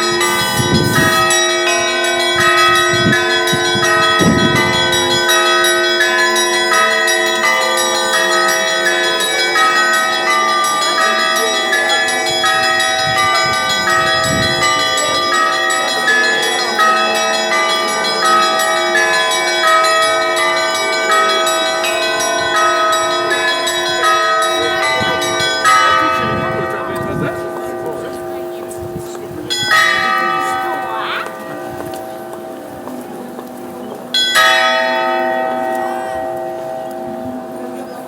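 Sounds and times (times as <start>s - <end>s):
church bells ringing: 0.0s - 38.0s.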